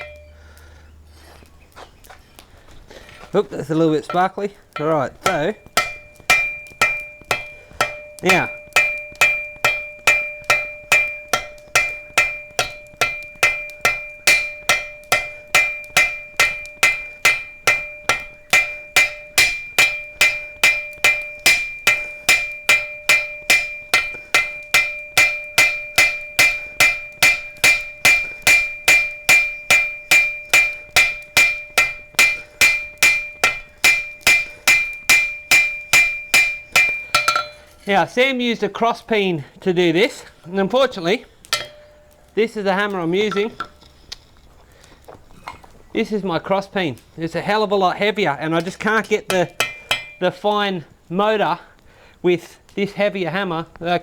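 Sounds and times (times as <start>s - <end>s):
anvil ringing: 0.0s - 0.4s, 3.9s - 38.1s, 41.5s - 42.2s, 42.8s - 43.8s, 48.6s - 50.3s
hammer striking steel on anvil: 0.0s - 0.4s, 4.0s - 38.0s, 41.4s - 42.2s, 43.2s - 43.9s, 48.6s - 50.2s.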